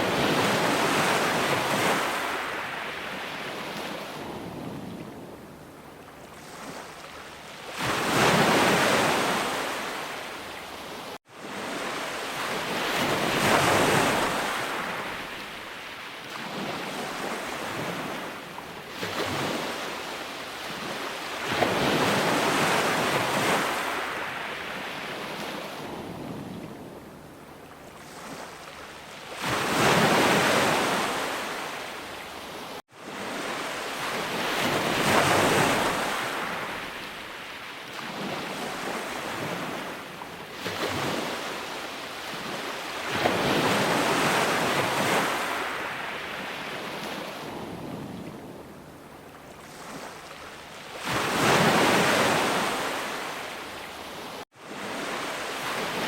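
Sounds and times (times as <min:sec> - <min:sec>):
sea waves breaking on shore: 0:00.0 - 0:56.0.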